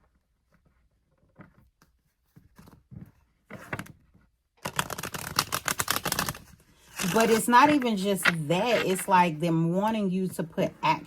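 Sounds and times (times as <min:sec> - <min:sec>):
cards being shuffled: 0:04.6 - 0:09.1.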